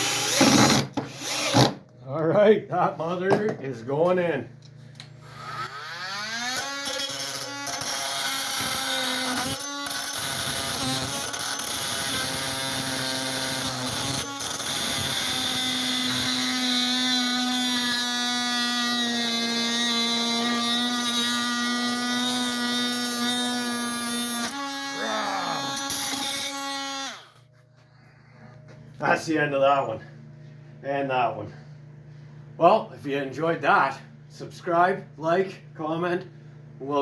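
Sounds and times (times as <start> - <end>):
oscillating multi-tool buzzing: 5.2 - 27.4.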